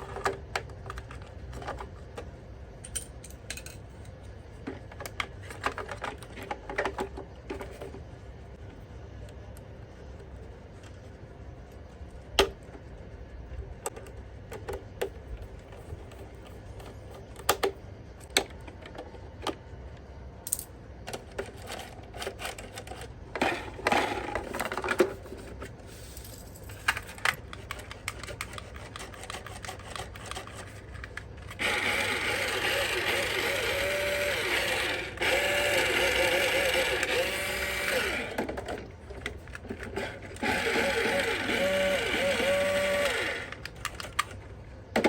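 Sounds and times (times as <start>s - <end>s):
plastic parts clicking and tapping: 0.0s - 8.0s, 13.8s - 19.6s, 26.8s - 31.6s, 43.5s - 44.4s.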